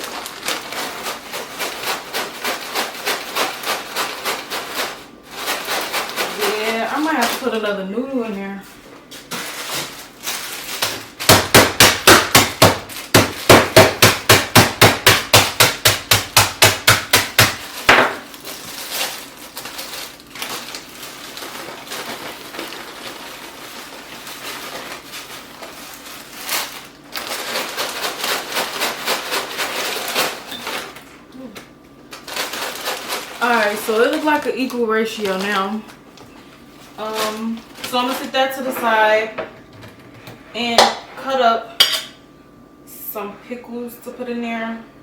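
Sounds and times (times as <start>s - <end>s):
crunching and crinkling of packet: 0.0s - 6.4s, 9.2s - 11.3s, 17.6s - 31.1s, 32.0s - 36.0s
noodle block being pounded: 11.2s - 18.2s.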